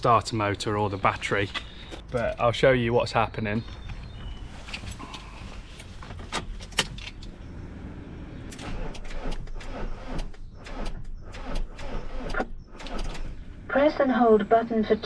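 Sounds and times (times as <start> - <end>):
ignition clicks and rattles: 4.7 - 14.5.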